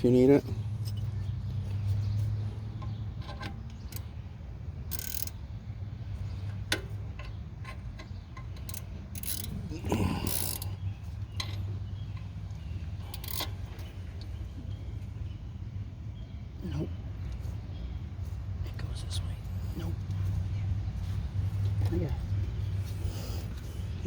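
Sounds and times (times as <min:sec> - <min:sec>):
ratchet wrench clicking: 0:04.9 - 0:05.4, 0:06.7 - 0:09.6, 0:10.2 - 0:10.8, 0:13.0 - 0:13.6.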